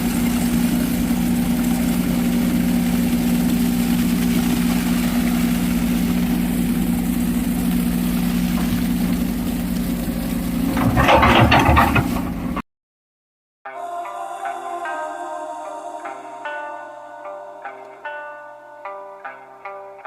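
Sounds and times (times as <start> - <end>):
heavy vehicle engine running: 0.0 - 12.6.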